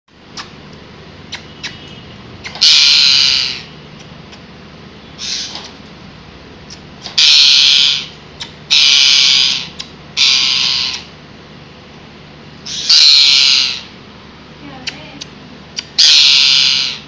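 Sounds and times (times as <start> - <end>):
parrot screeching: 2.5 - 3.7, 5.2 - 5.7, 7.1 - 11.1, 12.6 - 14.0, 15.9 - 17.0.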